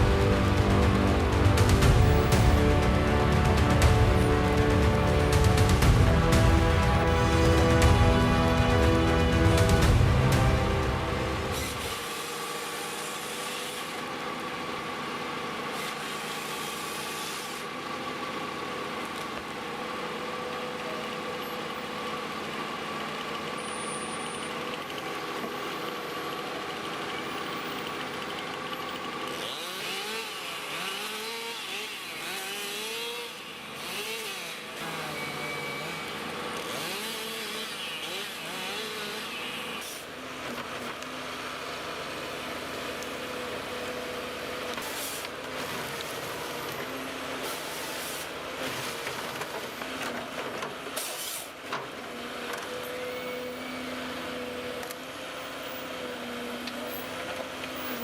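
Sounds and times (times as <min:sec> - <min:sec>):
rising and falling whines: 0:00.0 - 0:12.1
logging machine engine running: 0:00.0 - 0:23.6, 0:24.5 - 0:41.2
constant machine whine: 0:00.0 - 0:51.0.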